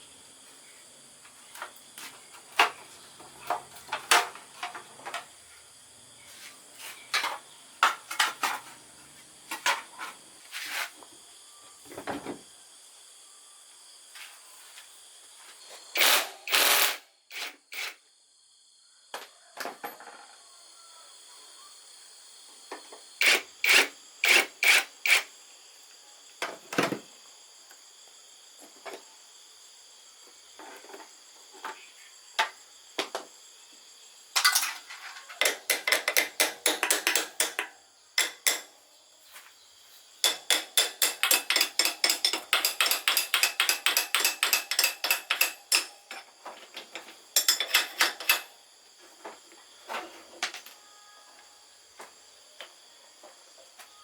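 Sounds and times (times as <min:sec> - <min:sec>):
tools clanking on metal: 0:34.4 - 0:38.7, 0:40.2 - 0:48.5
faint high-pitched tone: 0:50.6 - 0:52.0.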